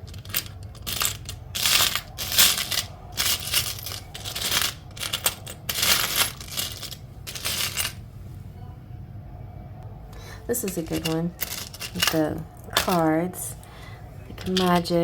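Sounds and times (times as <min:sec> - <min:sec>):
metal charms clinking and rattling: 0:00.0 - 0:08.0, 0:10.5 - 0:13.2, 0:14.3 - 0:15.0.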